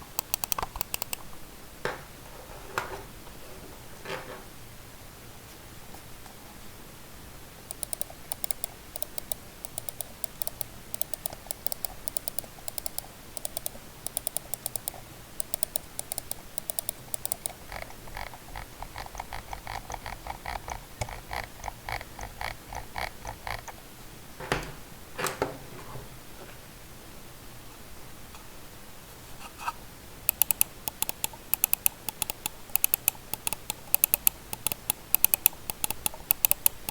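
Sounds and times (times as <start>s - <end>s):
computer mouse clicking: 0.1s - 1.3s, 7.7s - 23.8s, 30.3s - 36.9s.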